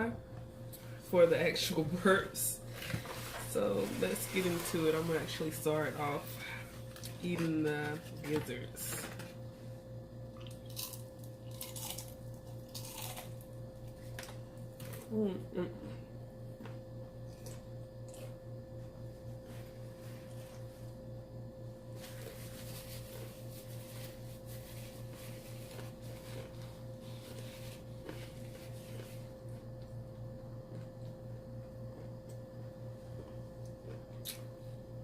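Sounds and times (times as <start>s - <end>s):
low electrical hum: 0.0s - 35.0s
person chewing crunchy food: 10.3s - 15.2s, 16.6s - 18.4s, 33.0s - 34.8s.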